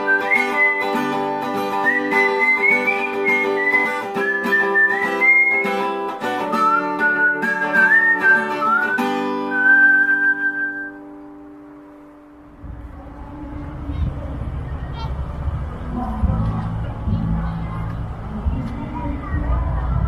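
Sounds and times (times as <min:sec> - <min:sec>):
whistled melody: 0:00.0 - 0:11.2
strummed acoustic guitar: 0:00.0 - 0:20.0.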